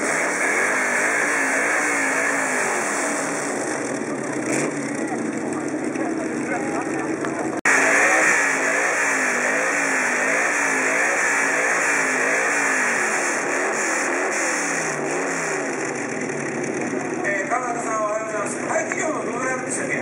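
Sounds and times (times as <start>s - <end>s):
engine blipping: 0.0s - 20.0s.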